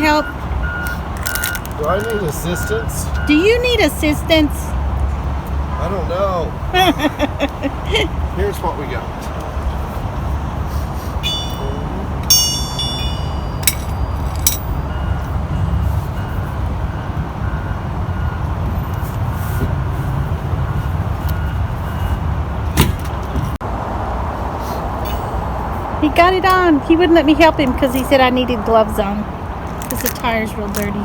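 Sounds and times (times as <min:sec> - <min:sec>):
low vehicle rumble: 0:00.0 - 0:31.0
bright metallic clinks: 0:11.2 - 0:15.1, 0:25.0 - 0:25.7.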